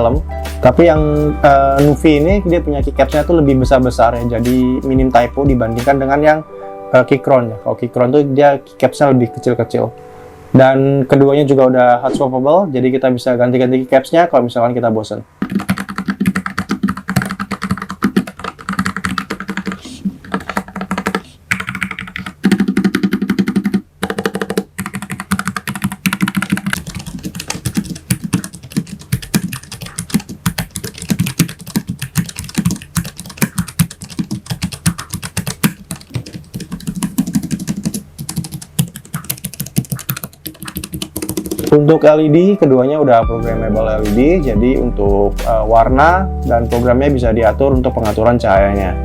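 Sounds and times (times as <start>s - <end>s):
mechanical keyboard typing: 15.4s - 41.8s.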